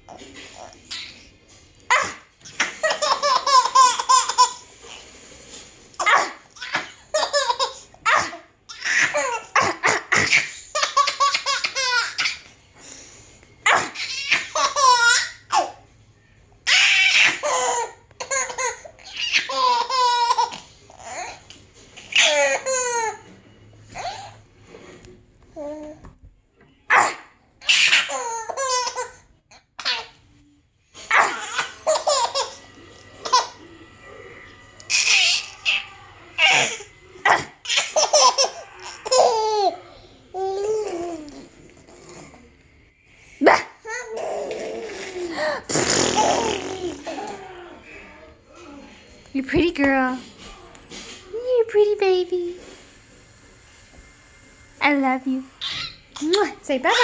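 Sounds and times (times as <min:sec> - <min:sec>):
baby laughing: 0:01.9 - 0:04.6, 0:06.0 - 0:12.5, 0:13.7 - 0:15.8, 0:16.6 - 0:23.2, 0:27.6 - 0:29.2, 0:31.1 - 0:33.6, 0:34.9 - 0:39.8, 0:43.9 - 0:47.5.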